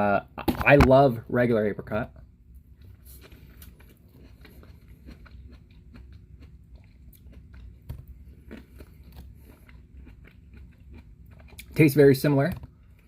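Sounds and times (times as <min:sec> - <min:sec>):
person chewing fruit: 0:02.6 - 0:13.0.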